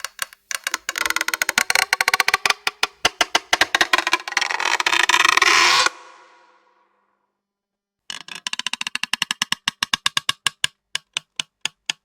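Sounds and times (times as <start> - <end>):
rope creaking under tension: 0.0 - 6.6, 8.1 - 9.7.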